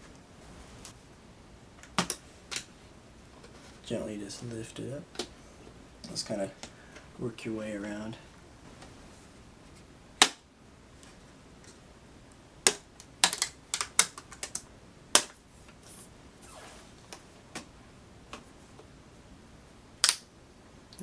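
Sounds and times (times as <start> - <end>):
plastic clips snapping: 12.6 - 14.6, 20.0 - 20.3.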